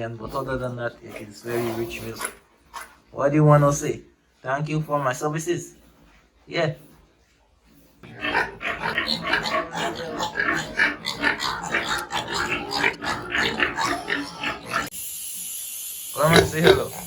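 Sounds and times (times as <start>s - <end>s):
piglets squealing and grunting: 8.0s - 14.9s, 16.2s - 17.0s.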